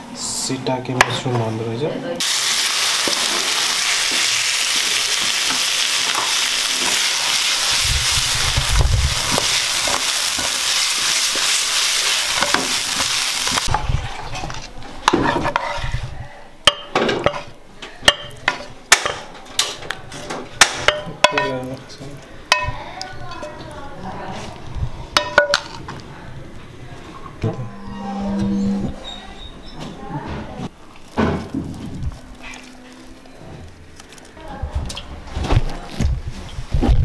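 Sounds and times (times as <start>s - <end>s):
food sizzling in a pan: 2.2s - 14.3s
utensil tapping cookware: 20.6s - 21.7s.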